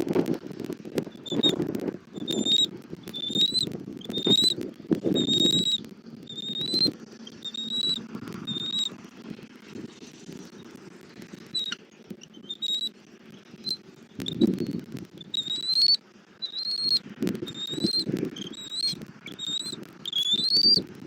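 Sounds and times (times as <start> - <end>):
scattered clicks: 0.0 - 21.0
eagle piping calls: 1.1 - 1.6, 2.2 - 4.6, 5.2 - 8.9, 11.5 - 12.9, 13.6 - 20.9.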